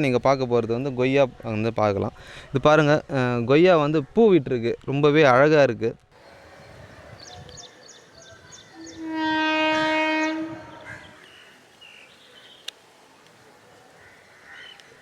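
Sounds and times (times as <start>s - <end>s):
horn note: 8.7s - 11.2s.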